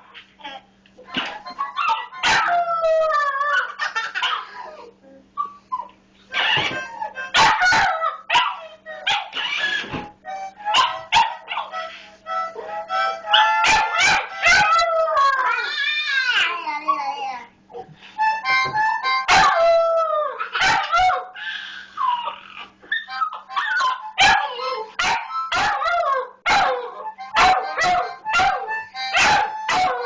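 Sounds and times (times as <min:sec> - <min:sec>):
harmonica: 0:01.0 - 0:03.0, 0:06.3 - 0:07.7, 0:08.6 - 0:15.3, 0:18.0 - 0:20.2, 0:21.4 - 0:26.2, 0:26.8 - 0:30.0
puppy howling: 0:01.6 - 0:04.4, 0:12.6 - 0:17.3, 0:19.3 - 0:30.0.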